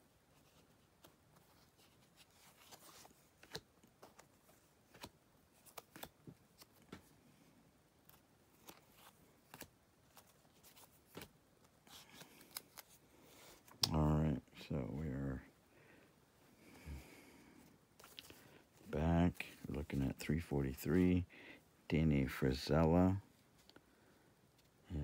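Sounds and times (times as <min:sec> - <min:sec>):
cards clicking and ticking: 0:03.4 - 0:07.1, 0:08.0 - 0:13.0.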